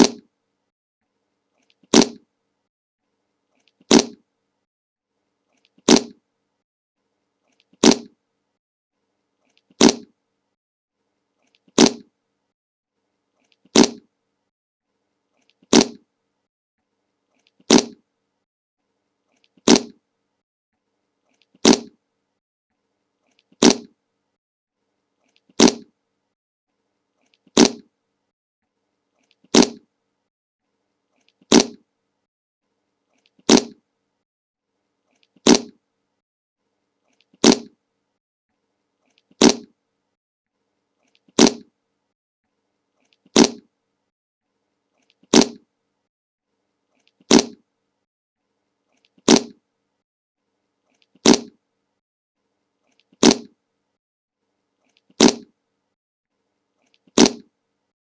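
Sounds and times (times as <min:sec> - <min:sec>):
fart sound effect: 0:00.0 - 0:00.3, 0:01.9 - 0:02.2, 0:03.9 - 0:04.2, 0:05.8 - 0:06.2, 0:07.8 - 0:08.2, 0:09.7 - 0:10.1, 0:11.8 - 0:12.1, 0:13.7 - 0:14.1, 0:15.7 - 0:16.0, 0:17.7 - 0:18.0, 0:19.6 - 0:20.0, 0:21.6 - 0:22.0, 0:23.6 - 0:23.9, 0:25.6 - 0:25.9, 0:27.6 - 0:27.9, 0:29.5 - 0:29.8, 0:31.5 - 0:31.8, 0:33.5 - 0:33.8, 0:35.4 - 0:35.8, 0:37.4 - 0:37.8, 0:39.4 - 0:39.7, 0:41.4 - 0:41.7, 0:43.4 - 0:43.7, 0:45.3 - 0:45.6, 0:47.3 - 0:47.6, 0:49.3 - 0:49.6, 0:51.2 - 0:51.6, 0:53.2 - 0:53.5, 0:55.2 - 0:55.5, 0:57.2 - 0:57.5.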